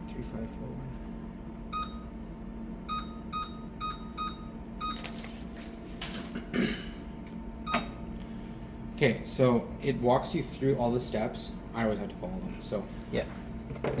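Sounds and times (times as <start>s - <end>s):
machine hum: 0.0s - 14.0s
keypad beeps: 1.7s - 2.1s, 2.9s - 5.1s, 7.7s - 8.0s.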